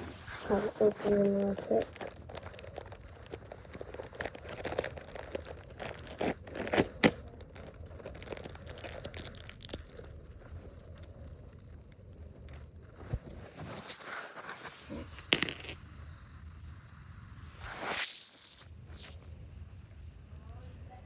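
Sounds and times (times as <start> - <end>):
plastic bag rustling: 0.0 - 11.3
metal lures clinking: 1.8 - 12.7, 14.4 - 17.8.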